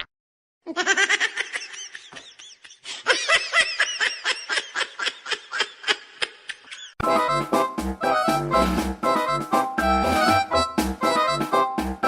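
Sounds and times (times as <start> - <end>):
high-pitched laughter: 0.7 - 7.0.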